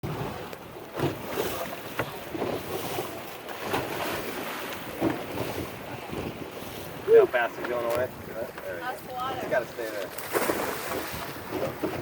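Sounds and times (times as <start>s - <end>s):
water slapping boat hull: 0.0s - 12.0s
wind buffeting microphone: 0.0s - 12.0s.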